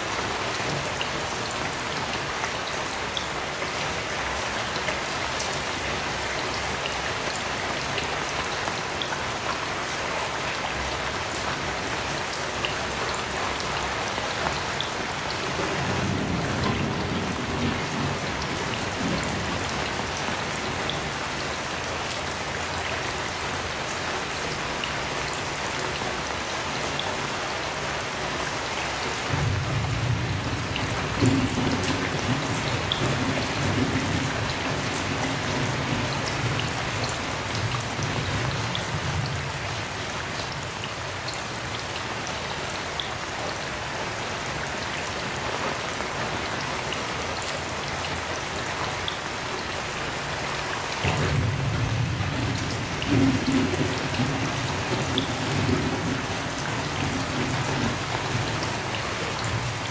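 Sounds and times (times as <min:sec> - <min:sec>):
heavy rain falling: 0:00.0 - 0:59.9
distant thunder rolling: 0:15.4 - 0:21.2, 0:29.2 - 0:40.0, 0:51.0 - 0:59.9.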